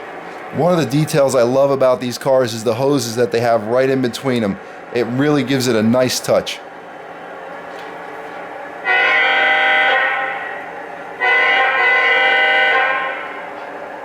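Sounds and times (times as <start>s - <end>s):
model train running: 0.0s - 14.0s
model train air horn: 8.8s - 13.9s.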